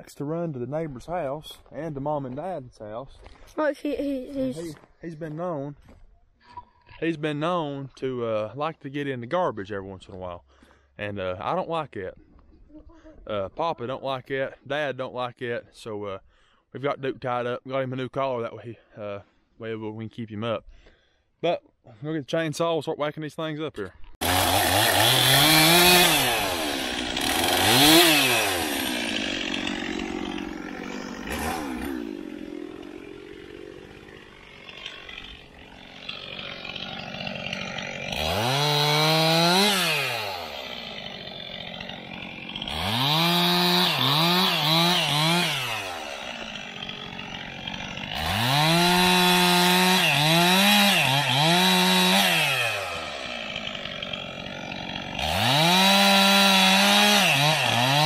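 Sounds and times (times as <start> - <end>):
chainsaw revving and idling: 3.9 - 4.8, 24.2 - 58.0
chainsaw cutting wood: 24.2 - 58.0.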